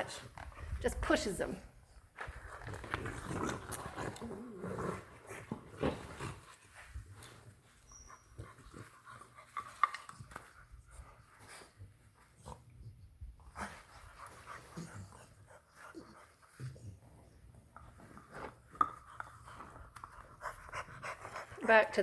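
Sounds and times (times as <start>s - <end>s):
puppies panting: 19.0s - 22.0s.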